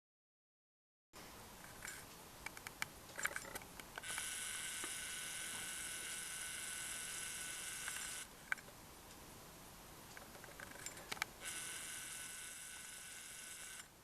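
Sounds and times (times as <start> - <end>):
camera zoom motor whirring: 4.0 - 8.3, 11.4 - 14.0.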